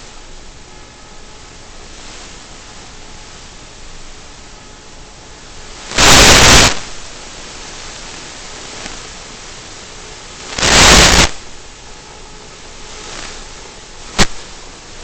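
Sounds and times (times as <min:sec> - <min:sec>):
steady camera audio hiss: 0:00.0 - 0:15.0
loud bursts of noise: 0:05.6 - 0:15.0.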